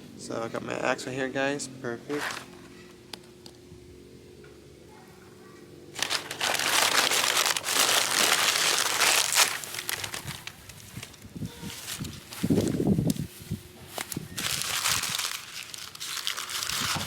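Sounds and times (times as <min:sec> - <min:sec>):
dry material crinkling: 0:06.0 - 0:17.0.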